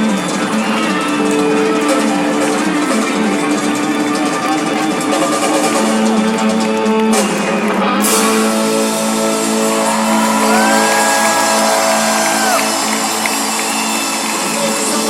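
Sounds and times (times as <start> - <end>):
electric guitar chords: 0.0 - 15.0
live rock band music: 0.0 - 15.0
crowd shouting: 8.8 - 15.0.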